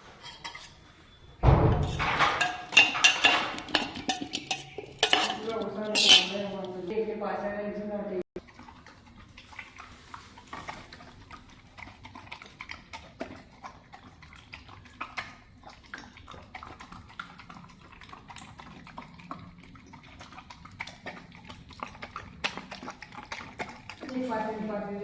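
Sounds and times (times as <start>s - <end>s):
dog eating with wet smacks: 8.4s - 25.0s.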